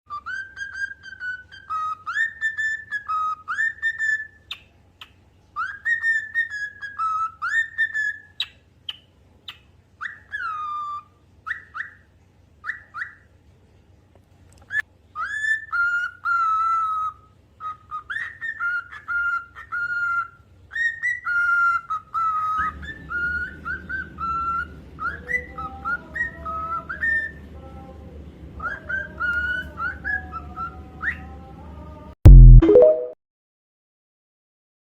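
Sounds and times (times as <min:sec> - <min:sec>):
fainter lower whistling: 0:00.1 - 0:04.6, 0:14.7 - 0:27.4, 0:28.6 - 0:31.4
cockatiel whistling a tune: 0:00.1 - 0:13.2, 0:14.7 - 0:27.4, 0:28.6 - 0:31.3.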